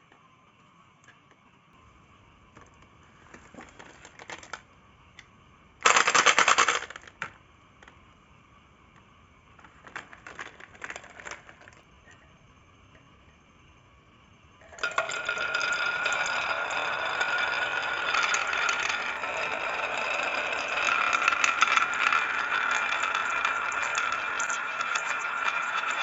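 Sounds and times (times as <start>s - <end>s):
marbles rattling down a track: 5.8s - 7.3s, 14.7s - 26.0s.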